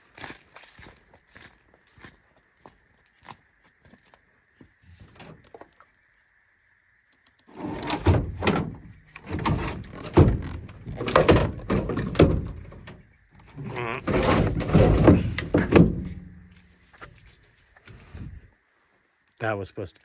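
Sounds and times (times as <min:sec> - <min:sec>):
heavy thumps and knocks: 0:07.8 - 0:16.5.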